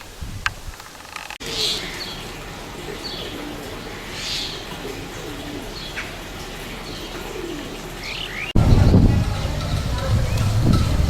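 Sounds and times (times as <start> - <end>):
dove cooing: 1.4 - 11.0
birds chirping and whistling: 6.8 - 11.0.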